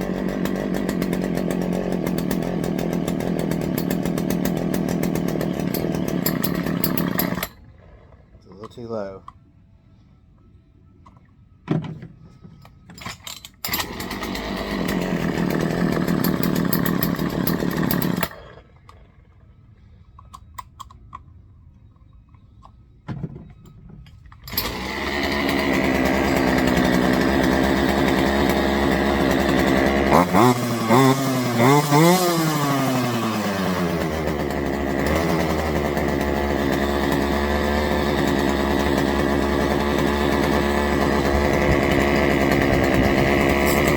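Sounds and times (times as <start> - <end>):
chainsaw running and revving: 0.0 - 7.6, 13.7 - 18.7, 24.5 - 43.9
chainsaw pull-starting: 0.0 - 8.9, 13.0 - 19.4, 24.2 - 43.9.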